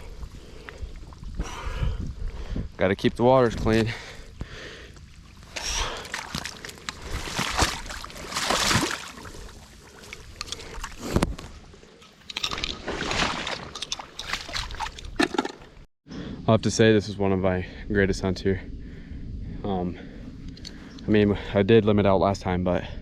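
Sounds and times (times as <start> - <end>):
wading through water: 3.5 - 15.8.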